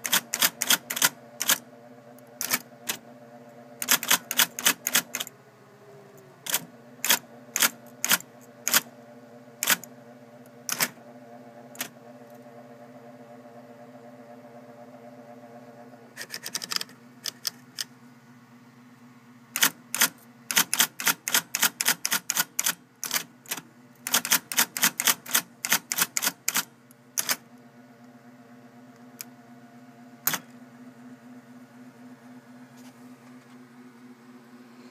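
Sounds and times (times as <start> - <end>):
typewriter keys clacking: 0.0 - 1.6, 2.4 - 3.0, 3.8 - 5.3, 6.5 - 8.8, 9.6 - 9.9, 10.7 - 11.0, 16.2 - 17.6, 19.6 - 27.4
typewriter motor humming: 0.0 - 5.3, 6.4 - 8.9, 9.6 - 13.1, 15.5 - 17.9, 19.5 - 27.6, 30.2 - 30.6.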